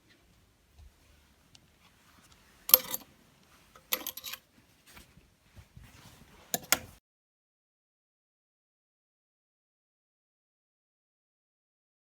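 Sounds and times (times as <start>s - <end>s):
soft handling noise: 0.0s - 7.0s
clinking and clattering objects: 2.7s - 3.1s, 3.8s - 4.4s.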